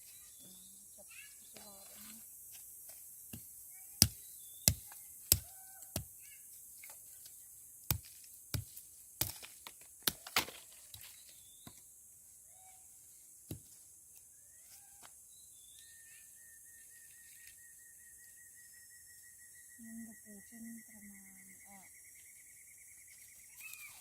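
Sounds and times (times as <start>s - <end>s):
bird chirps: 0.0s - 2.2s, 3.7s - 6.5s, 14.4s - 24.0s.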